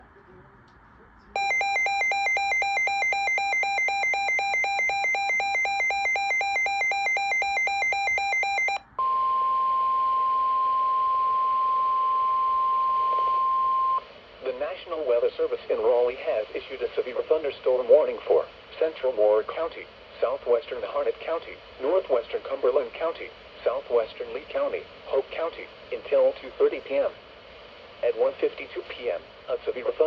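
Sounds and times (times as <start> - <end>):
pulsing two-tone electronic beeping: 1.4 - 9.1
steady warning tone: 1.4 - 9.1.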